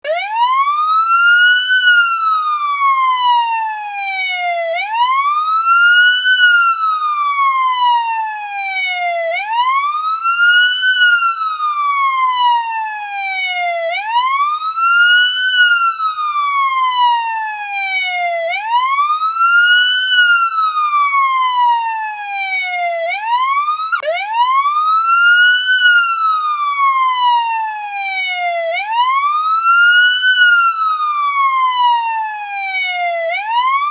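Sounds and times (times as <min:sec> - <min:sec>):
police siren wailing: 0:00.0 - 0:33.9.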